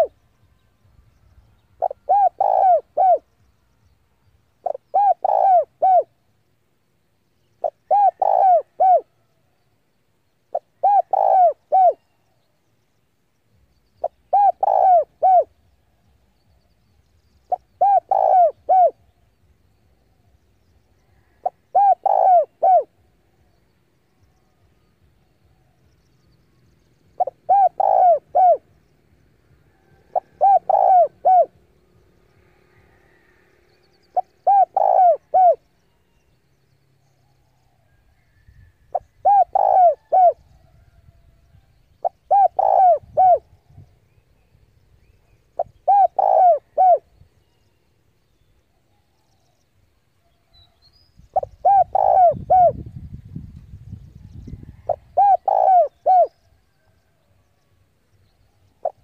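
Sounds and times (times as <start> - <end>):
dove cooing: 1.8 - 3.3, 4.6 - 6.2, 7.6 - 9.2, 10.5 - 12.0, 14.0 - 15.6, 17.5 - 19.1, 21.0 - 23.4, 27.1 - 28.8, 29.7 - 31.7, 34.1 - 35.6, 38.9 - 40.8, 42.0 - 43.8, 45.6 - 47.1, 51.3 - 52.9, 54.5 - 57.0, 58.8 - 59.0.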